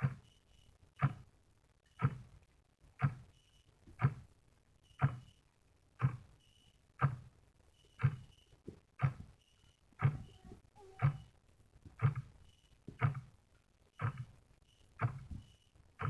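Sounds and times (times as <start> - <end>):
clock ticking: 3.0 - 3.3, 5.0 - 5.3, 7.0 - 7.3, 8.0 - 8.3, 9.0 - 9.3, 10.0 - 11.3, 12.0 - 12.3, 13.0 - 13.3, 14.0 - 14.3, 15.0 - 15.3.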